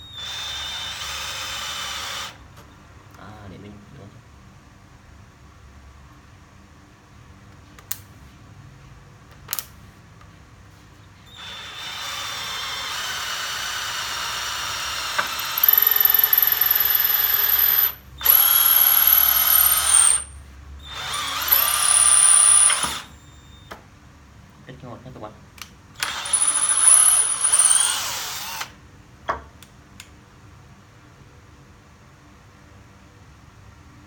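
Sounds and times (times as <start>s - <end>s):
cordless drill drilling into wood: 0.0s - 2.4s, 11.3s - 23.2s, 26.0s - 28.8s
drill clicks: 11.4s - 20.3s, 20.9s - 23.1s, 26.0s - 28.7s.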